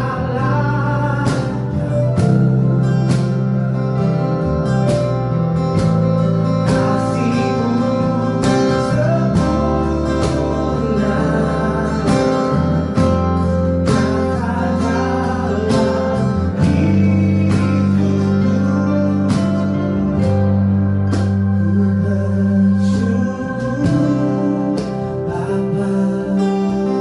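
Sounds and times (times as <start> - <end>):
deep bass line: 0.0 - 27.0
guitar-led music: 0.0 - 27.0.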